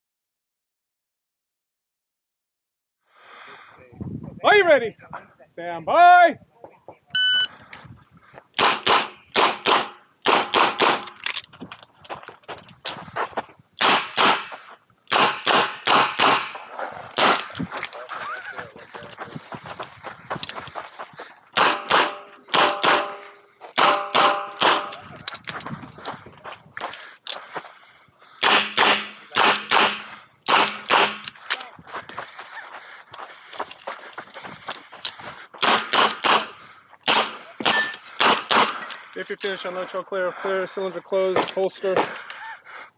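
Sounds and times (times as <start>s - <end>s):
shot timer beep: 7.2s - 7.5s
revolver gunshots: 8.6s - 11.2s, 13.8s - 17.6s, 21.6s - 25.0s, 28.4s - 31.4s, 35.6s - 36.5s, 37.1s - 38.8s.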